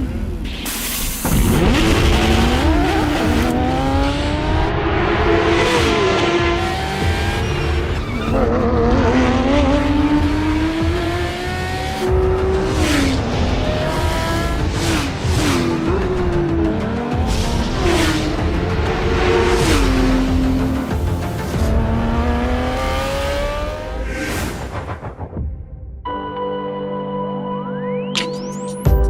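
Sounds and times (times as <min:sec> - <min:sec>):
racing car engine revving: 0:01.2 - 0:24.7.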